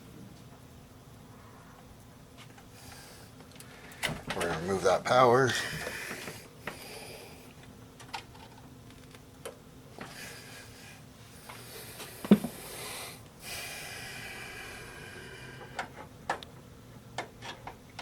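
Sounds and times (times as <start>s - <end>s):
person breathing out heavily: 5.5s - 7.5s, 10.0s - 15.8s.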